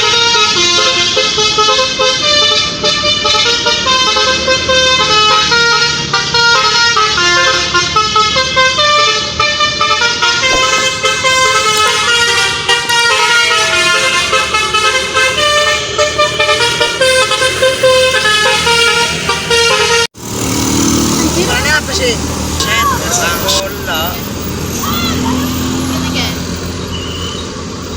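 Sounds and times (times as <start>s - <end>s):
musical bus horn melody: 0.0s - 20.2s, 22.6s - 24.2s.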